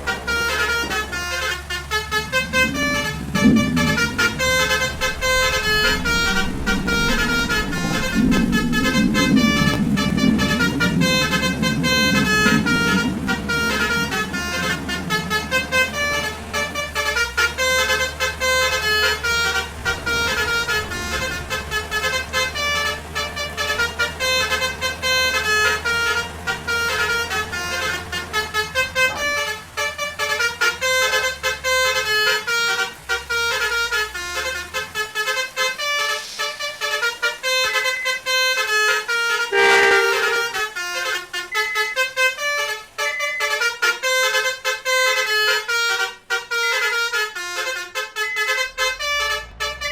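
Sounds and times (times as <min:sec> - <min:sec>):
low engine rumble: 0:00.0 - 0:49.9
multi-tone horn melody: 0:00.0 - 0:49.9.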